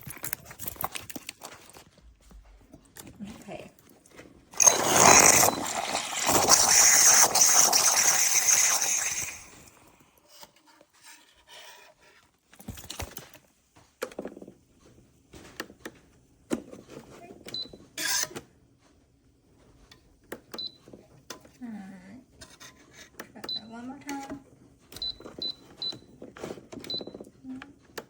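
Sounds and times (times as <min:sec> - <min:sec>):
steam wand hissing: 0:04.6 - 0:09.8.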